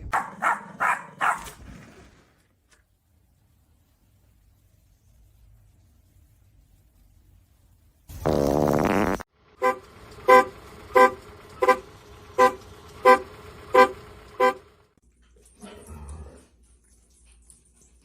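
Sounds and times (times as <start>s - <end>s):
car horn honking: 9.6s - 14.7s.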